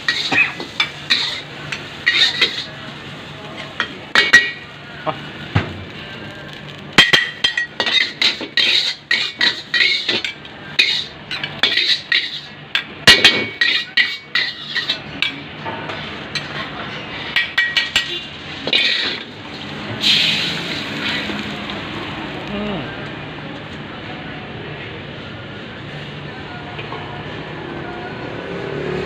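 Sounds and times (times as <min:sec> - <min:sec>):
metal spatula scraping a wok: 0:00.0 - 0:02.8, 0:07.7 - 0:12.6, 0:13.2 - 0:21.4.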